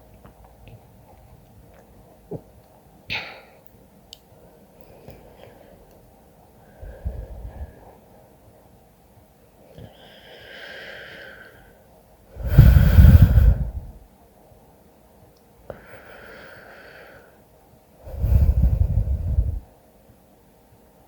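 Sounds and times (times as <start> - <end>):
person snoring: 12.4 - 13.9.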